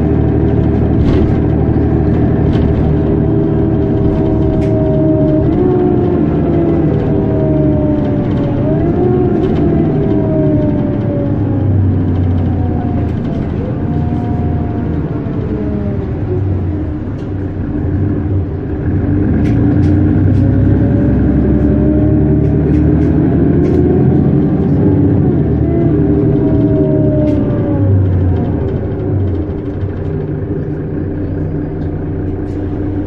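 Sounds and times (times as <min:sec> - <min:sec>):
bus engine accelerating: 0:00.0 - 0:33.0
gearbox whining: 0:00.0 - 0:33.0.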